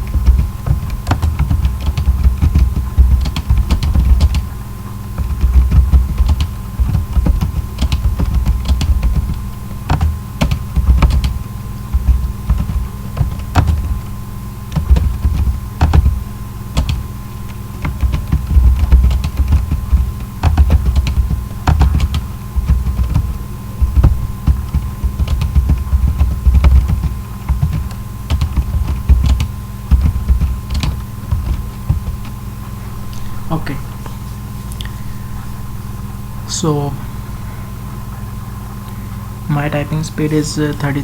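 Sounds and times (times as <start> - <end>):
typing on computer keyboard: 0.0 - 32.4
steady low hum: 0.0 - 41.0
dull low thuds: 5.2 - 14.2, 14.8 - 17.1, 17.7 - 32.5.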